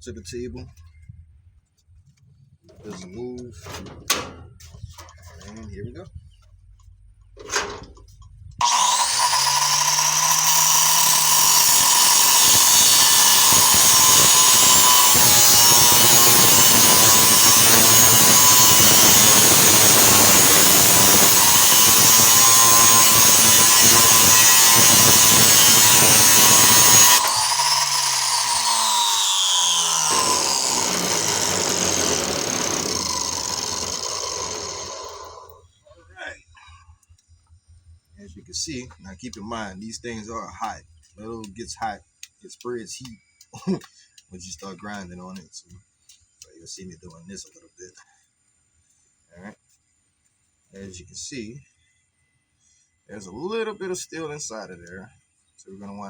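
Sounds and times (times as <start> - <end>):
cutoff wheel cutting metal: 8.6 - 35.6
motor winding down whine: 8.6 - 35.6.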